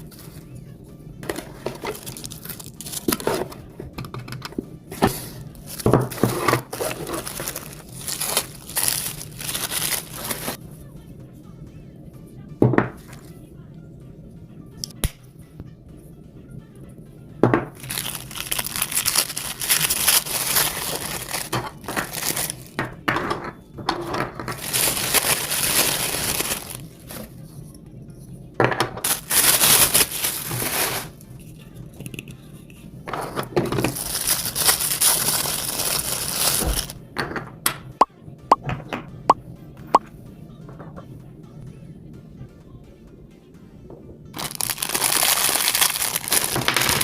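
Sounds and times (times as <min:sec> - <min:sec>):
packaging crinkling and tearing: 0:01.3 - 0:03.6, 0:05.6 - 0:10.6, 0:17.8 - 0:22.8, 0:24.5 - 0:27.3, 0:29.0 - 0:31.2, 0:33.8 - 0:37.0, 0:44.4 - 0:47.0.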